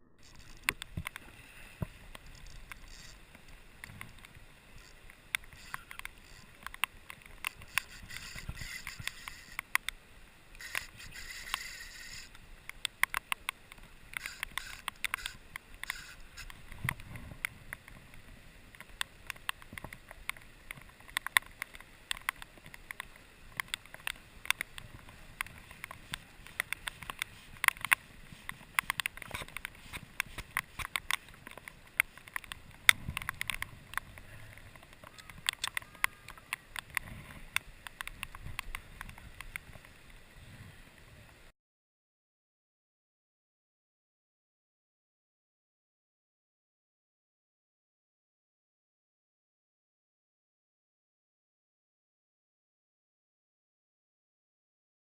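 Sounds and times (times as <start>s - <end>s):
raindrops tapping: 10.6s - 39.9s.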